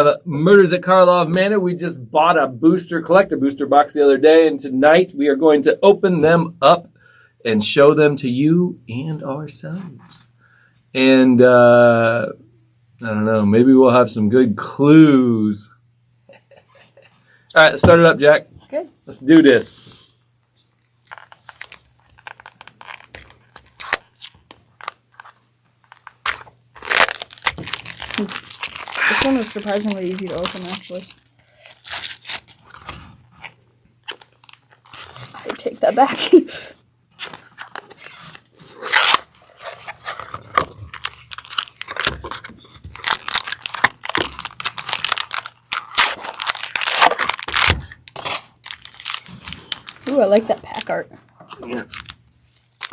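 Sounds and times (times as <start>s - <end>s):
plastic wrapping crinkling: 20.6s - 36.1s, 37.2s - 52.9s.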